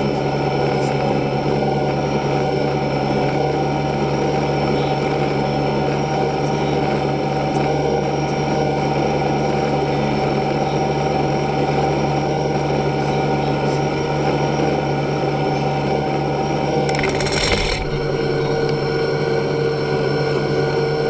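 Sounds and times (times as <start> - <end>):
small motor humming: 0.0 - 21.0.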